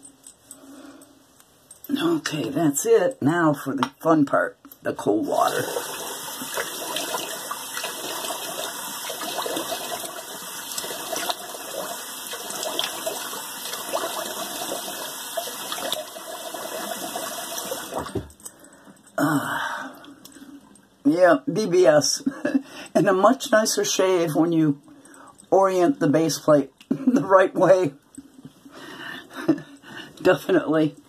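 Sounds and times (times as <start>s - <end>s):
tap water splashing in sink: 5.5s - 18.3s.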